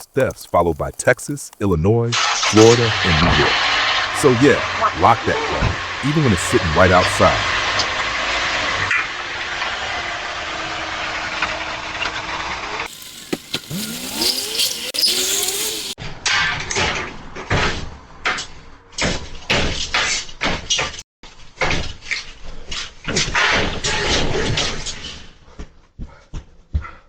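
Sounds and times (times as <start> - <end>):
car engine revving: 12.9 - 16.0.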